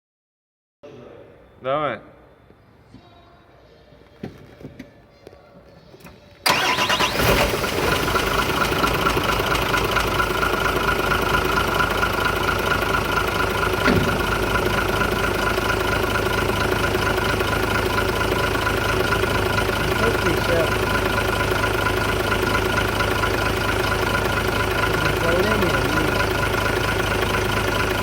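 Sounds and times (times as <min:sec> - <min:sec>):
truck engine starting and idling: 0:06.4 - 0:28.0.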